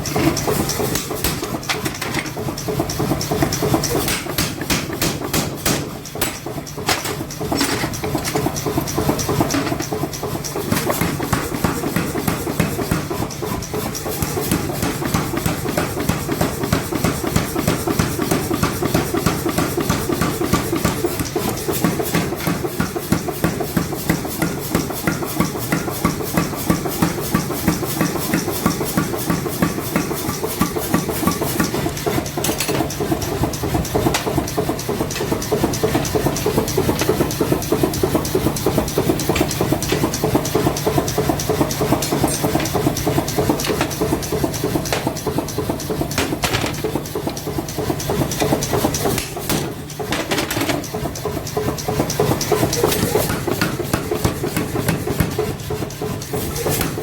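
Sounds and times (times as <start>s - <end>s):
power hammer striking steel: 0.2s - 13.1s, 29.6s - 57.0s
machine running hum: 29.4s - 57.0s.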